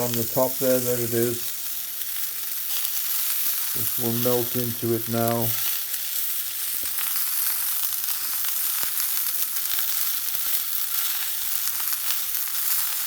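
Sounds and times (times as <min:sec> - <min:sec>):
steak sizzling in a frying pan: 0:00.0 - 0:13.0
pops and crackles of fat: 0:01.4 - 0:13.0.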